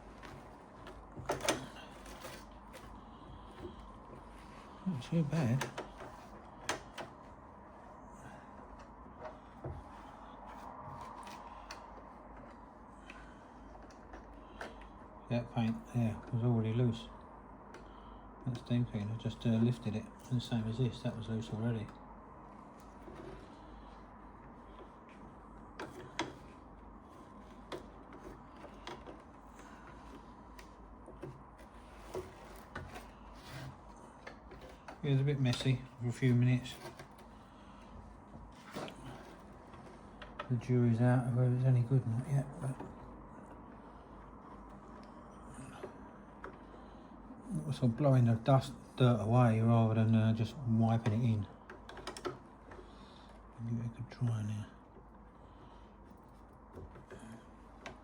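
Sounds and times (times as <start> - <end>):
faint steady hum: 0.0 - 58.0
light clicks and knocks: 50.9 - 53.5.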